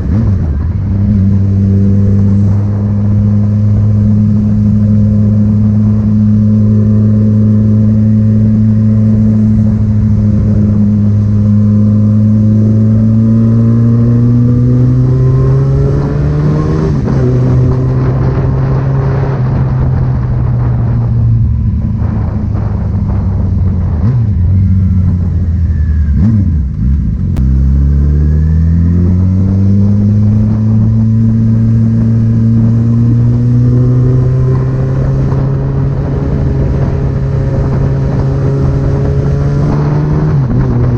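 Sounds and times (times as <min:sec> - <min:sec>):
car engine revving: 0:00.0 - 0:40.9.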